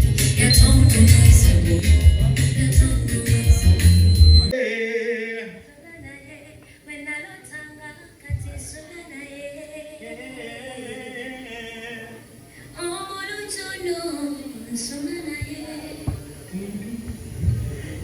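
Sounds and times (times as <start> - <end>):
person singing with music: 0.0 - 5.7.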